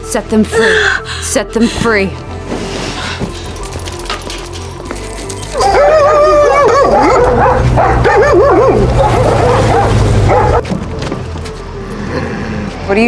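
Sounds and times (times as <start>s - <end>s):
dogs yelping and whining: 5.5s - 10.6s.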